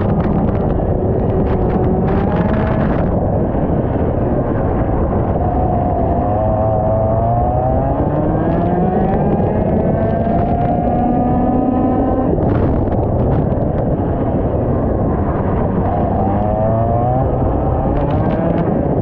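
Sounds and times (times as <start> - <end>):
kart engine accelerating: 0.0 - 4.0, 4.8 - 12.9
wind buffeting microphone: 0.0 - 19.0.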